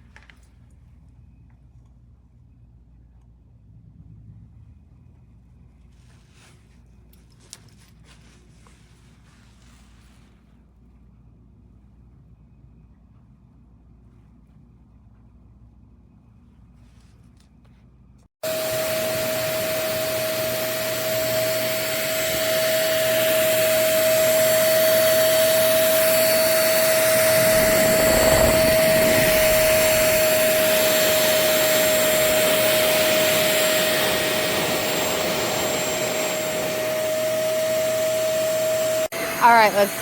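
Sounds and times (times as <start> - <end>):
stick vacuum running: 18.4 - 40.0.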